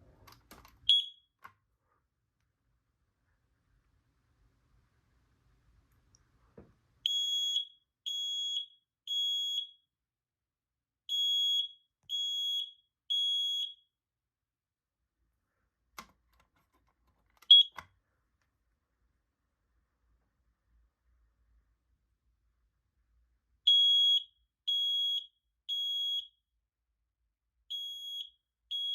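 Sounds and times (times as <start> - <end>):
smoke alarm beeps: 0.8 - 1.4, 7.0 - 9.9, 11.1 - 13.9, 17.4 - 17.8, 23.7 - 26.4, 27.7 - 28.9
alarm click: 17.4 - 17.9.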